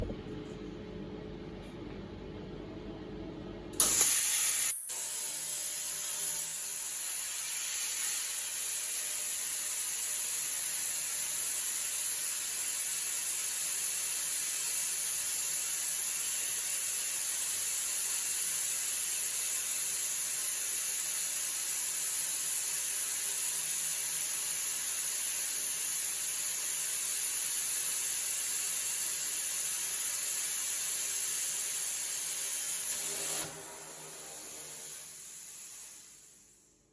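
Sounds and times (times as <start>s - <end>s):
low hum: 0.0s - 0.8s
plasma cutter hissing: 3.8s - 36.7s.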